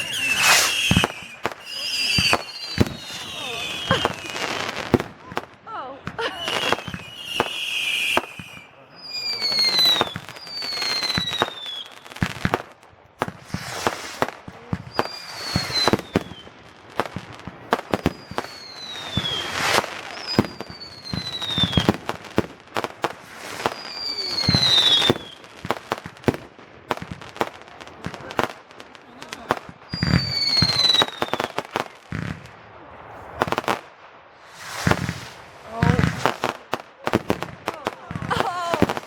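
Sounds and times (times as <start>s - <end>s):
firework bangs and crackles: 0.0s - 39.0s
whistling fireworks: 0.0s - 39.0s.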